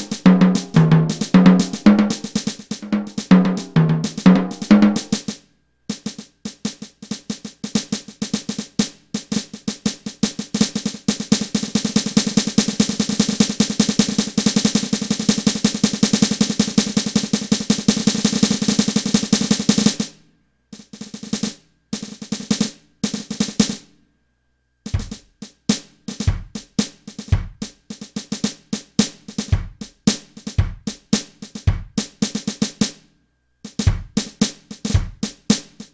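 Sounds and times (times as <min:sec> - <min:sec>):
bass drum kicks: 0:00.0 - 0:05.2, 0:25.0 - 0:25.3, 0:26.2 - 0:26.7, 0:27.3 - 0:27.7, 0:29.5 - 0:29.9, 0:30.6 - 0:31.0, 0:31.7 - 0:32.0, 0:33.8 - 0:34.2, 0:34.9 - 0:35.3
electronic snare drum roll: 0:00.0 - 0:20.1, 0:24.9 - 0:33.0, 0:33.7 - 0:35.9.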